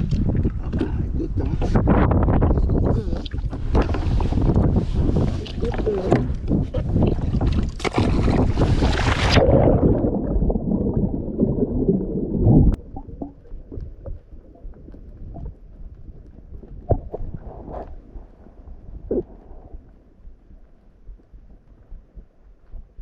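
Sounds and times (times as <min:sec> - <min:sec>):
wind buffeting microphone: 0:00.0 - 0:20.4.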